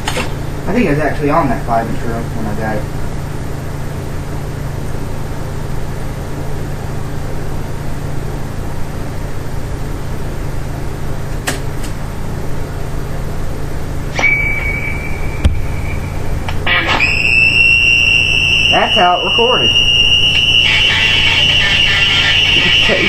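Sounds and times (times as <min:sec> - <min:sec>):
tape recorder hum and hiss: 0:00.0 - 0:23.0
high-pitched squeal: 0:14.1 - 0:23.0.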